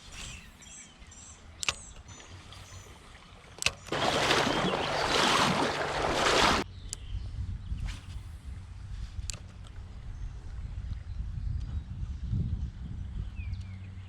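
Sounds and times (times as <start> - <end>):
water rushing and splashing: 3.9 - 6.6.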